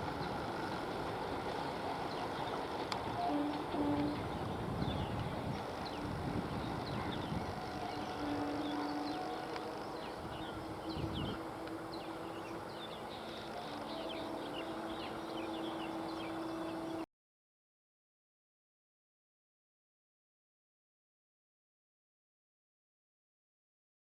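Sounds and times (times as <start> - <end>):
train passing rumble: 0.0 - 17.0
small birds chirping: 3.8 - 17.0.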